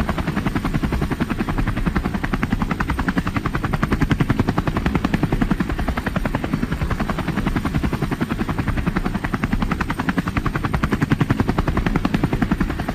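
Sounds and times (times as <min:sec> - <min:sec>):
helicopter rotor thumping: 0:00.0 - 0:12.9
helicopter turbine noise: 0:00.0 - 0:12.9.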